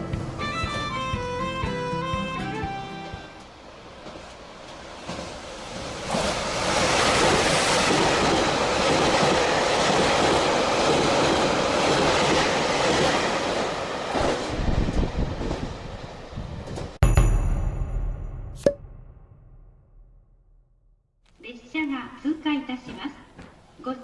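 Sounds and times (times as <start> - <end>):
train wheels clattering on rails: 3.4 - 13.4.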